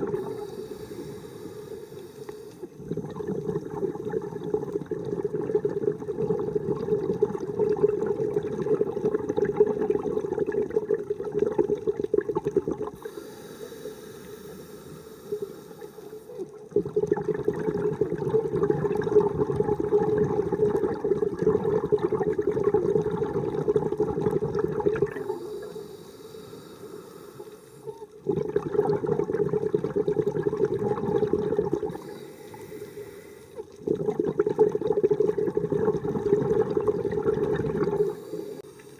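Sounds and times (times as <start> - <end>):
bubbling exhalations underwater: 0.0 - 1.1, 2.7 - 13.1, 16.4 - 25.6, 28.0 - 32.2, 33.6 - 38.6
hissing inhalations: 0.2 - 2.8, 13.0 - 16.4, 25.2 - 28.1, 31.9 - 33.7, 37.9 - 38.9.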